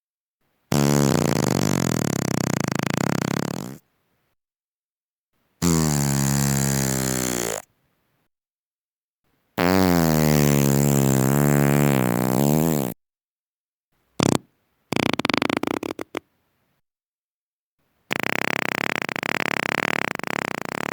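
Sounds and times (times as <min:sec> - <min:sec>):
farts: 0:00.7 - 0:03.8, 0:05.6 - 0:07.7, 0:09.6 - 0:13.0, 0:14.2 - 0:16.2, 0:18.1 - 0:20.9.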